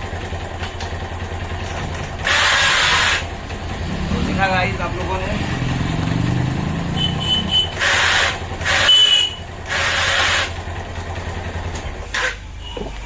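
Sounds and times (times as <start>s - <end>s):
motorcycle engine humming: 0.0s - 13.0s
harsh grinding bursts: 1.7s - 5.0s, 5.6s - 11.1s.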